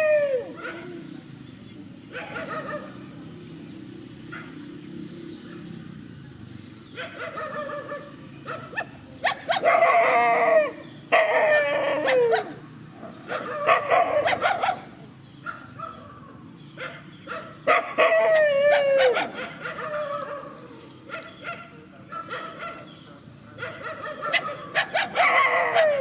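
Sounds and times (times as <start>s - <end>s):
dogs howling: 0.0s - 1.1s, 7.0s - 15.0s, 17.3s - 21.6s, 23.6s - 26.0s
dogs barking sharply: 0.6s - 1.0s, 2.1s - 3.0s, 7.0s - 26.0s.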